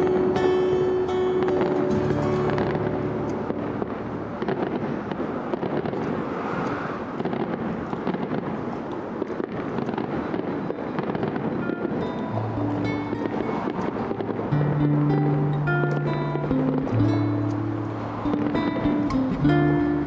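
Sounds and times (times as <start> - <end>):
music: 0.0 - 4.5, 11.6 - 20.0
fireworks crackling: 0.0 - 20.0.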